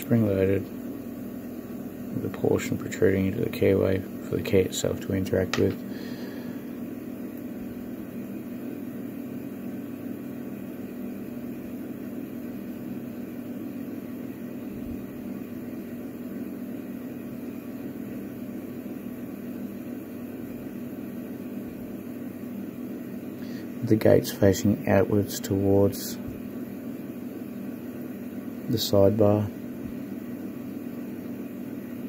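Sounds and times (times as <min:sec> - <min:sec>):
low machine hum: 0:00.0 - 0:32.0.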